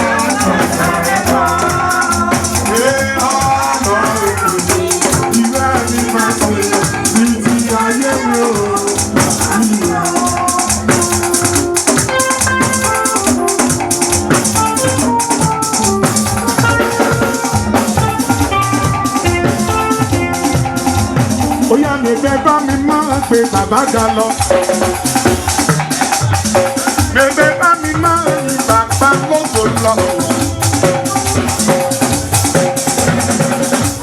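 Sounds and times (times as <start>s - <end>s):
shaker rattling: 0.0s - 20.5s
melody line: 0.0s - 24.7s
drums: 0.0s - 34.0s.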